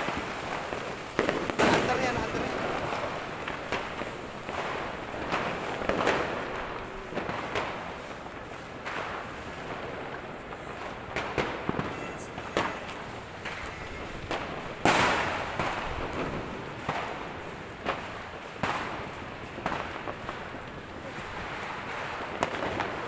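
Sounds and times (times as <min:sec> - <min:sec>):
firecrackers and fireworks bursting: 0:00.0 - 0:23.0
loud bang with rolling echo: 0:13.4 - 0:17.1.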